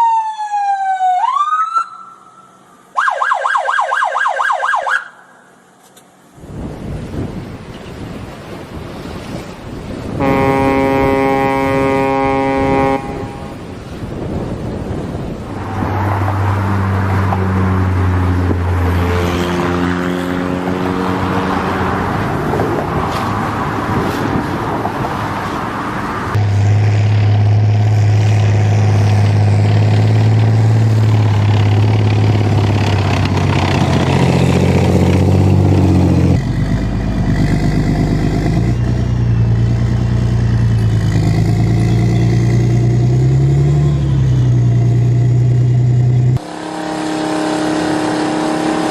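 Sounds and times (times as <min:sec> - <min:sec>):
tank engine running: 0:26.3 - 0:48.9
motorboat engine running: 0:26.4 - 0:45.0.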